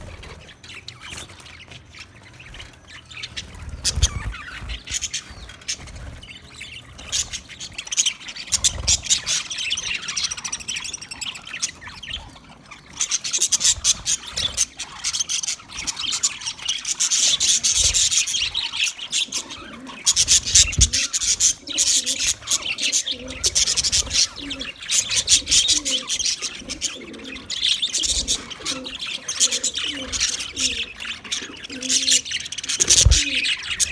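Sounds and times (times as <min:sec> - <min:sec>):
budgerigars chattering: 0:00.0 - 0:33.9.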